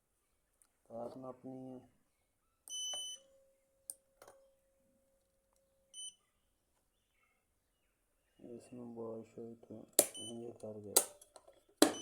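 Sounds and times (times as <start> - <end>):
sharp clicks: 10.0 - 10.3
electronic beeps: 10.0 - 10.5.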